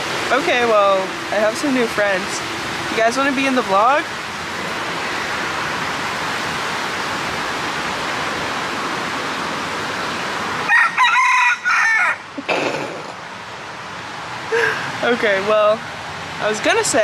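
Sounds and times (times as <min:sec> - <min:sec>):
waterfall rushing: 0:00.0 - 0:15.6
rooster crowing: 0:10.6 - 0:12.3.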